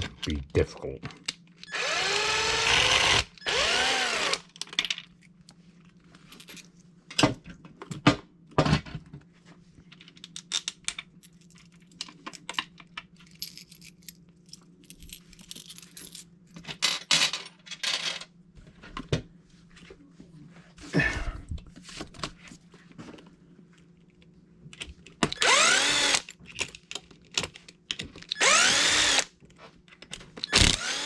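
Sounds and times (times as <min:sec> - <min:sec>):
power drill running: 0:01.7 - 0:04.4, 0:25.4 - 0:26.2, 0:28.4 - 0:29.3, 0:30.5 - 0:31.0.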